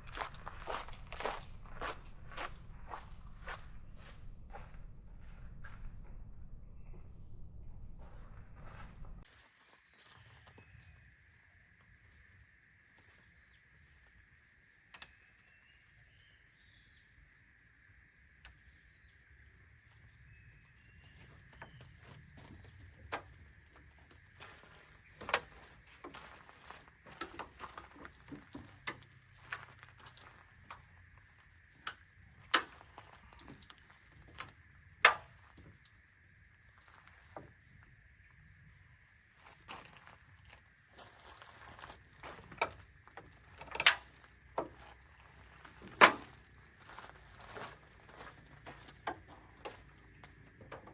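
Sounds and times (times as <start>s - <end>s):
handling clicks and knocks: 0.0s - 9.2s
insects droning: 0.0s - 50.9s.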